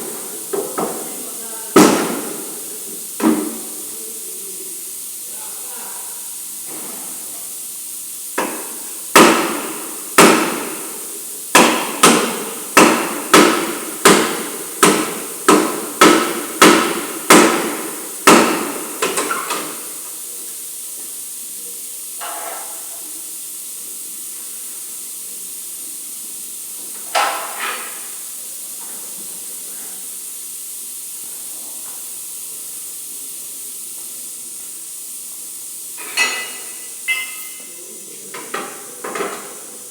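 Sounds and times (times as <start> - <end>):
hammer striking metal: 11.6 - 19.6, 36.0 - 37.7.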